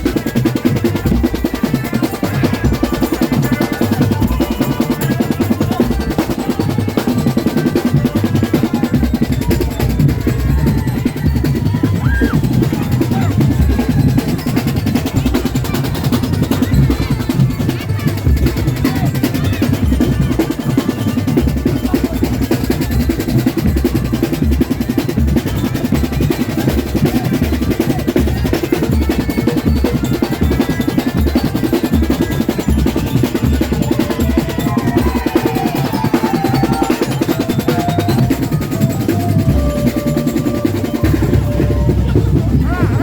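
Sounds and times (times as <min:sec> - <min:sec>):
wavering melody: 0:29.8 - 0:43.0.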